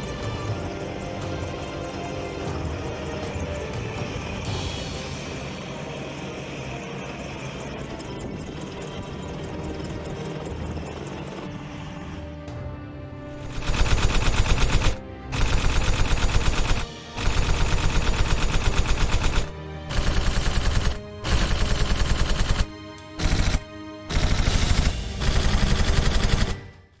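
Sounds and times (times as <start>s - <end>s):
automatic gunfire bursts: 13.4s - 26.7s.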